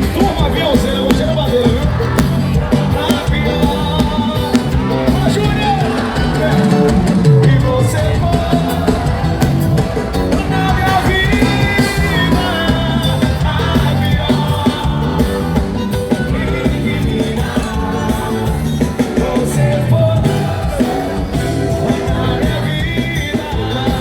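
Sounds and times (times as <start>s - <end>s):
live band music: 0.0s - 24.0s.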